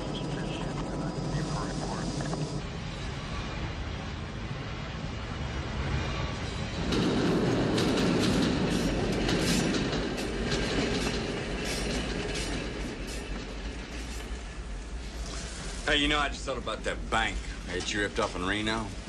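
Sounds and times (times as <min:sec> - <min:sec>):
train rumbling on track: 0:00.0 - 0:19.0
wheels clattering over rails: 0:06.5 - 0:14.8.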